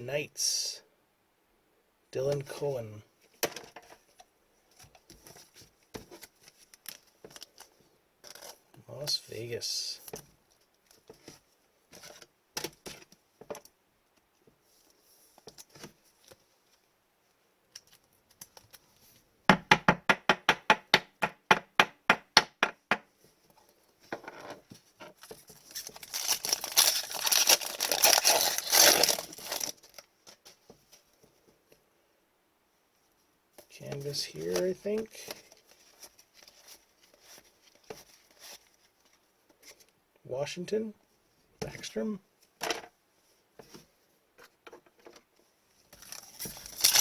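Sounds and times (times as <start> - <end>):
card pack wrapper tearing and crinkling: 25.5 - 30.1, 46.0 - 47.0.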